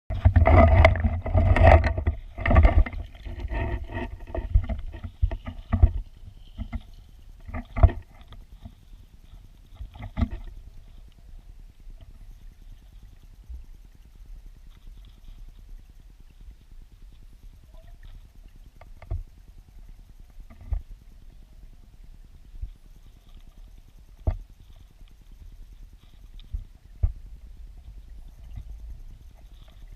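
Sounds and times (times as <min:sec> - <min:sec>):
underwater water rumble and sloshing: 0:00.1 - 0:29.9.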